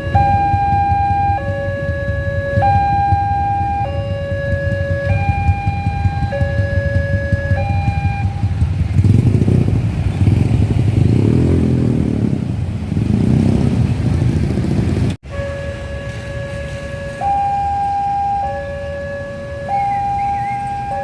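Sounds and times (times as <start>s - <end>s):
level crossing two-tone alarm: 0.0s - 8.6s, 15.3s - 21.0s
heavy traffic engine rumble: 0.0s - 21.0s.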